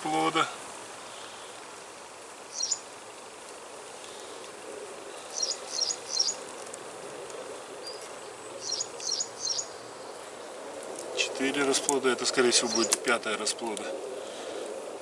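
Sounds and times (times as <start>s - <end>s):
honeybees humming: 0.0s - 15.0s
small bird chirping: 2.5s - 2.9s, 5.2s - 6.8s, 7.8s - 11.1s, 12.5s - 13.1s.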